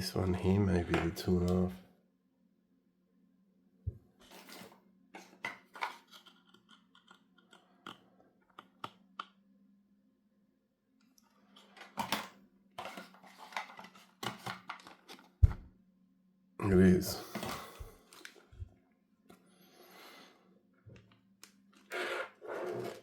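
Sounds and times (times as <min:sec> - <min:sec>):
headphone cables clicking and rustling: 0:11.6 - 0:15.6.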